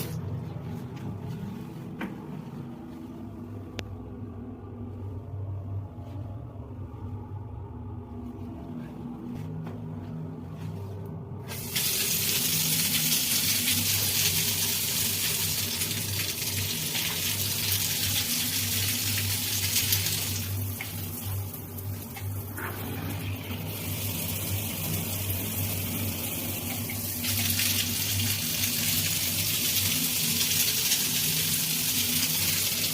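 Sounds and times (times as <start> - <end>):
steady low hum: 0.0 - 32.9
water gushing: 11.5 - 32.9.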